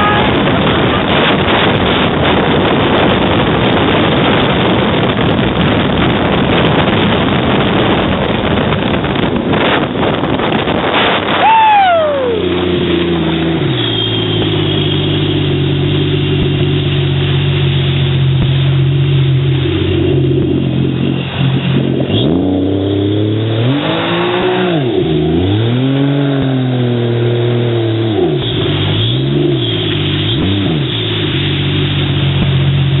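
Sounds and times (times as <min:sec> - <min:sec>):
jet ski engine revving: 0:00.0 - 0:33.0.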